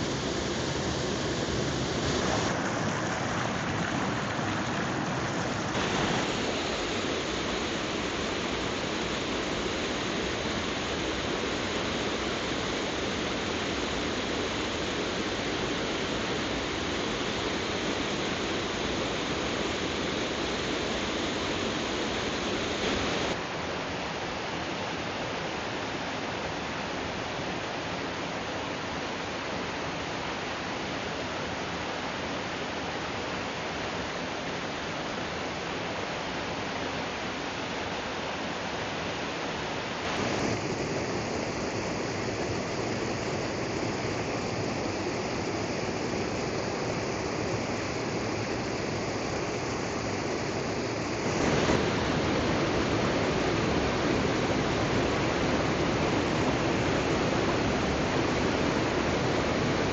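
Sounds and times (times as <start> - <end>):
waterfall rushing and splashing: 0.0 - 24.5, 25.3 - 59.9.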